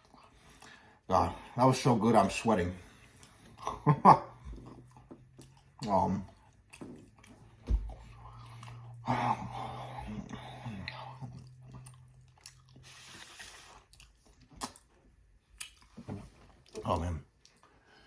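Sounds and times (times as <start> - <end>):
man chewing food: 0.0 - 1.1, 2.8 - 18.0
low steady hum: 0.0 - 18.0
wet mouth noises: 10.2 - 16.8.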